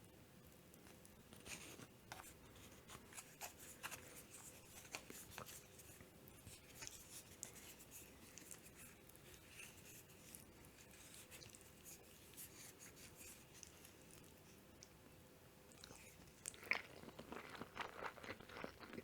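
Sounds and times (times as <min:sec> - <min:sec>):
low background hum: 0:00.0 - 0:19.0
chewing sounds: 0:15.7 - 0:19.0.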